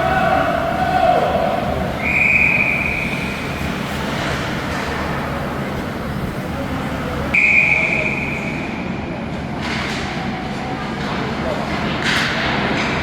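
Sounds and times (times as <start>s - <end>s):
hum of rink and crowd: 0.0s - 13.0s
referee's whistle blast: 2.0s - 3.2s, 7.4s - 8.5s.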